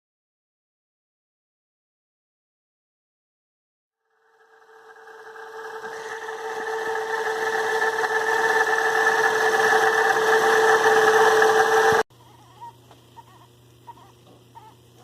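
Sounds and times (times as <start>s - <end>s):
water pump whine: 4.0s - 12.1s.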